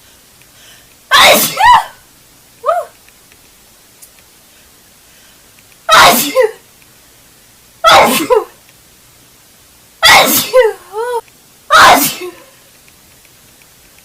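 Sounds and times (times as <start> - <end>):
girl sneezing: 1.1 - 2.0, 5.9 - 6.6, 7.8 - 8.6, 10.0 - 12.5.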